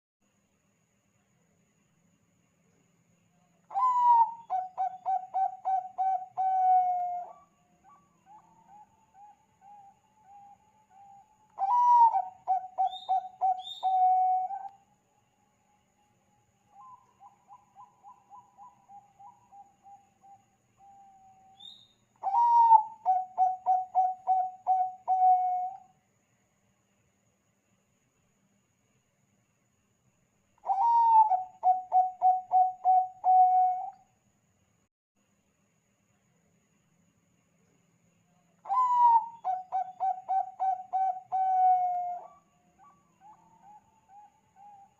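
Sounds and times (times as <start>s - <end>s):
dove cooing: 3.7s - 14.7s, 22.2s - 25.8s, 30.7s - 33.9s, 38.7s - 44.9s.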